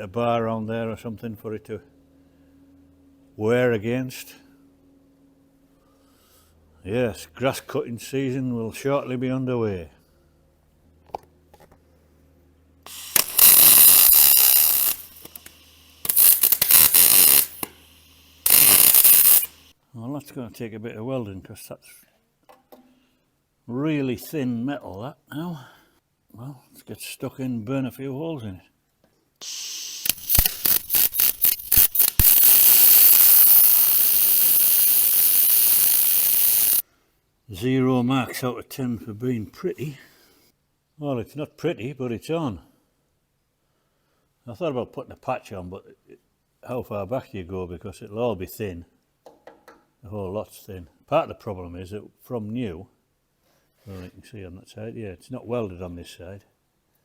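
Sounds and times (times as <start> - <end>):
faint steady hum: 0.0 - 49.0
power grinder on thin steel: 12.9 - 15.5, 16.1 - 17.8, 18.5 - 19.6, 30.0 - 36.8
welding arc crackling hiss: 12.9 - 19.7, 29.4 - 36.8.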